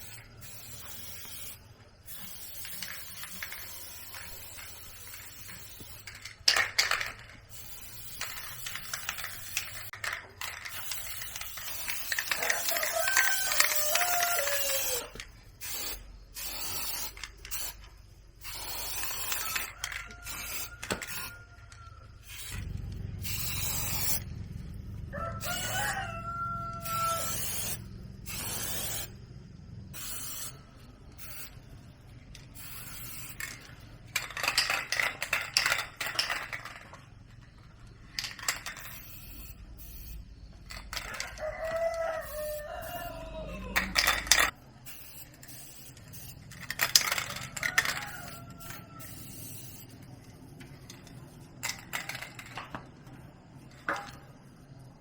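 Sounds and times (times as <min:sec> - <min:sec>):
rooster crowing: 0:12.4 - 0:15.2, 0:19.3 - 0:27.9, 0:40.9 - 0:44.6, 0:46.9 - 0:49.9.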